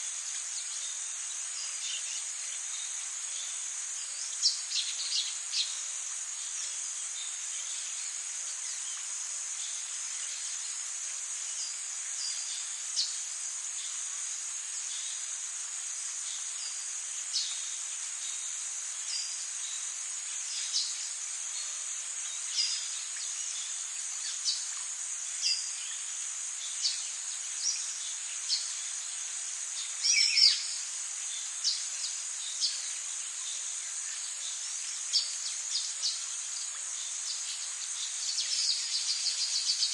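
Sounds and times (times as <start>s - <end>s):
high-pitched insect drone: 20.4s - 39.9s.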